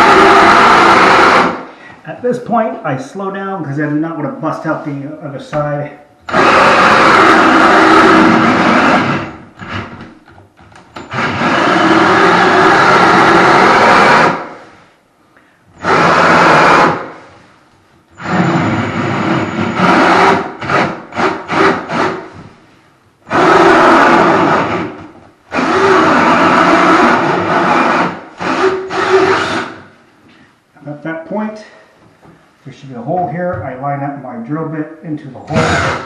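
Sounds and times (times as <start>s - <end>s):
hole saw cutting wood: 25.6s - 29.8s, 35.5s - 36.0s.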